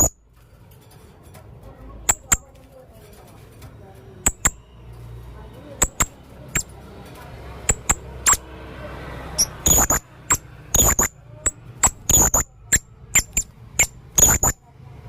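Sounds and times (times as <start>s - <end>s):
parrot calling high-pitched notes: 9.4s - 14.6s.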